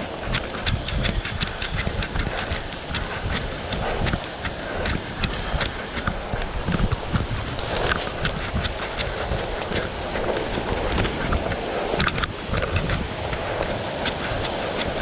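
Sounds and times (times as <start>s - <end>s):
camera jolting rumble: 0.0s - 15.0s
sharp clicks: 0.0s - 15.0s.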